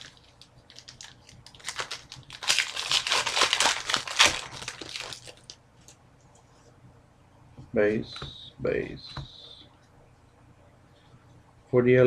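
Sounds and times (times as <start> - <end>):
wrapper being torn and crinkled: 0.0 - 5.6.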